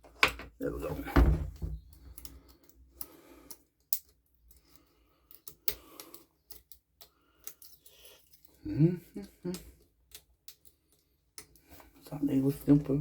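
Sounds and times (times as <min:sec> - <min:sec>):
hand tools clicking and tapping: 0:01.8 - 0:08.6, 0:09.2 - 0:11.9.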